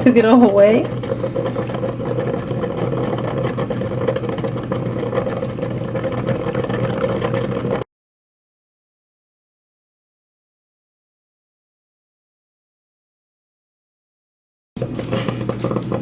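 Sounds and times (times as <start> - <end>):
coffee maker hissing and humming: 0.0 - 7.9, 14.8 - 16.0.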